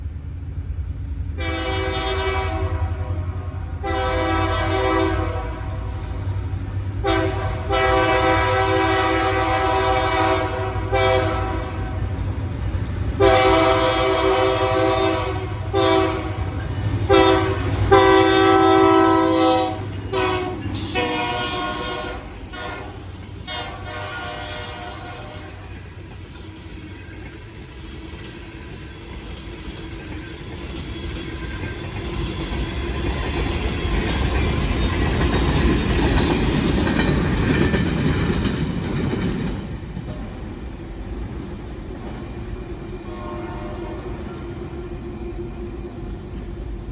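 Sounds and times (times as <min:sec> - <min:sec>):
passing train rumble: 0:00.0 - 0:46.9
locomotive horn blasts: 0:01.4 - 0:06.0, 0:07.0 - 0:12.0, 0:13.2 - 0:25.7, 0:43.1 - 0:44.4.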